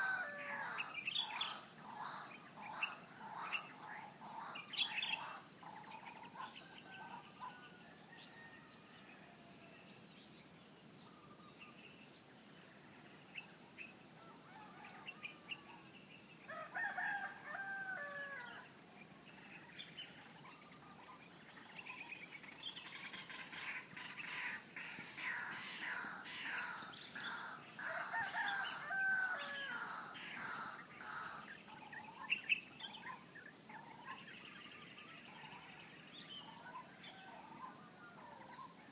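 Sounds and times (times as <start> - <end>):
rooster crowing: 0.0 - 0.9, 16.5 - 18.6, 26.7 - 31.4
small birds chirping: 0.7 - 6.7.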